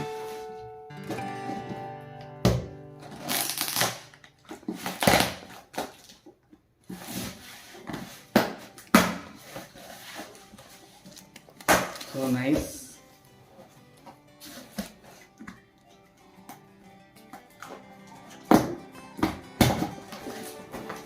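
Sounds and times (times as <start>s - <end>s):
packing rustling and crinkling: 3.1s - 8.3s, 9.3s - 15.4s.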